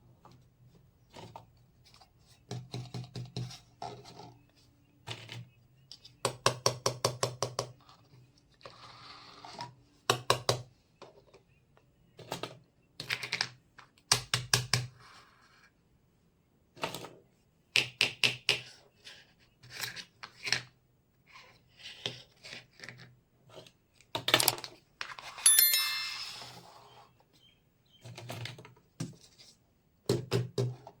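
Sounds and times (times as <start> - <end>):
bright metallic clink: 25.5 - 26.6.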